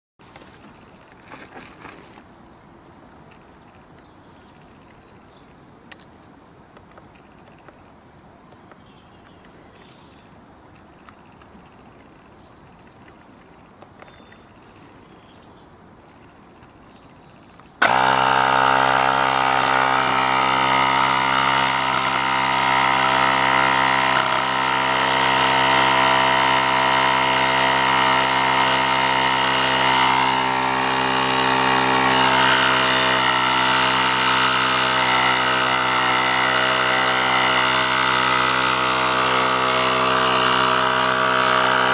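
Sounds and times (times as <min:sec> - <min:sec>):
tyre inflator buzzing: 0:17.8 - 0:41.9.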